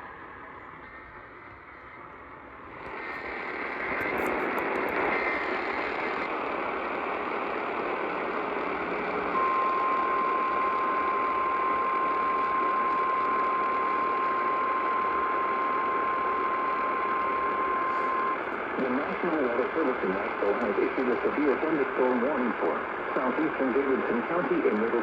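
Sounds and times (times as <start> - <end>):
radio static hiss: 0.0 - 25.0
steady single-pitch alarm tone: 9.4 - 18.4.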